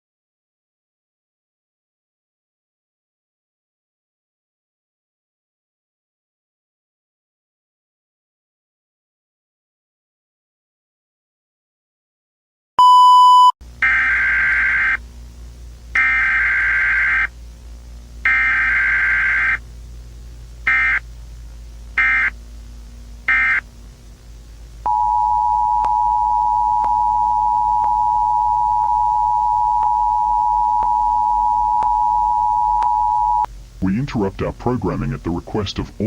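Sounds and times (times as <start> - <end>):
short loud beep: 12.8 - 13.5
buzzing digital data bursts: 13.7 - 15.1, 15.9 - 17.4, 18.1 - 21.1, 21.8 - 33.5
two-tone alert signal: 24.9 - 33.5.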